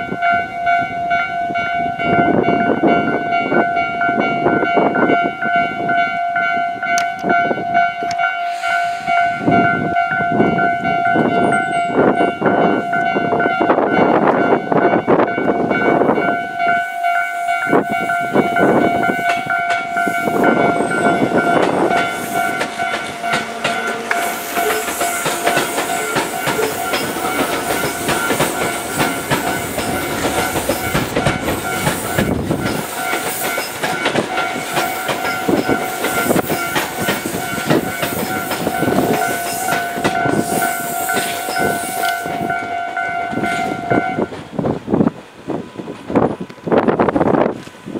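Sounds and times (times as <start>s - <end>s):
crossing warning bell ringing: 0.0s - 47.4s
train wheels clacking over rail joints: 16.8s - 44.8s.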